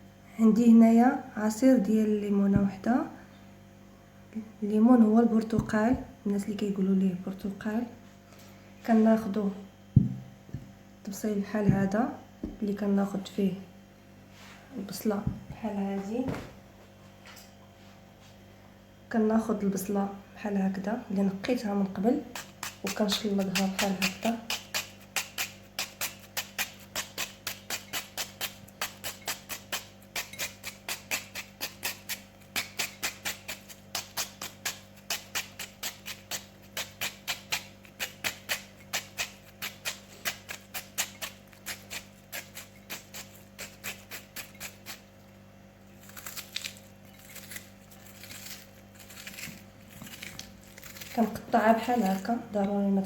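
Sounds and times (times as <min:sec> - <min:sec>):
knife cutting onion: 0:22.2 - 0:45.2, 0:45.9 - 0:52.9.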